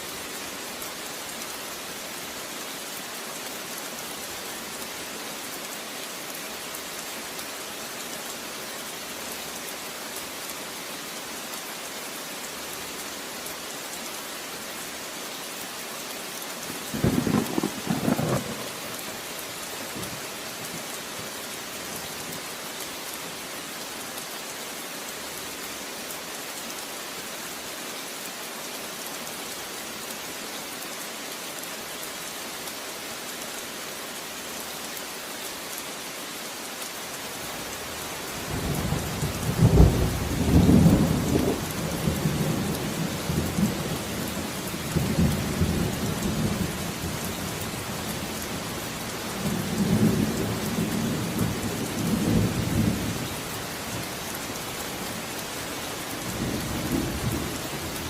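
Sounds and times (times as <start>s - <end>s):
rain falling: 0.0s - 58.0s
thunder rolling: 17.0s - 18.7s.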